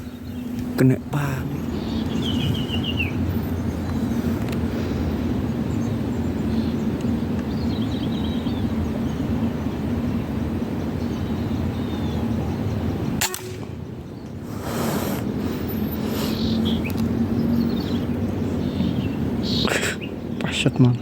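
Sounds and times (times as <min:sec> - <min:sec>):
faint bird chirps: 0:00.0 - 0:04.1, 0:14.6 - 0:21.0
air rifle shot: 0:13.2 - 0:13.8.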